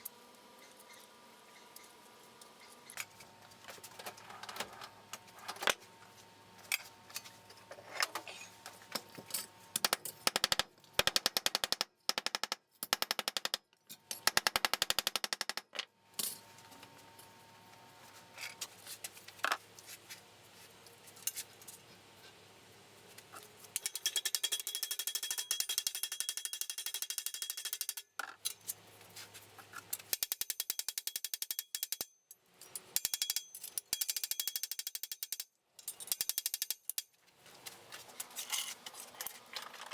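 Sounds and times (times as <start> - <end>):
rapid-fire metalworking tool on sheet metal: 23.8 - 28.6, 29.9 - 37.2.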